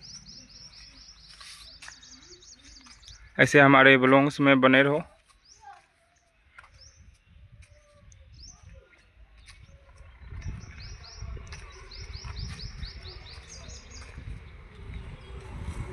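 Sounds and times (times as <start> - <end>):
small bird chirping: 0.0 - 3.4, 9.5 - 14.3
low rumbling noise: 9.8 - 15.9.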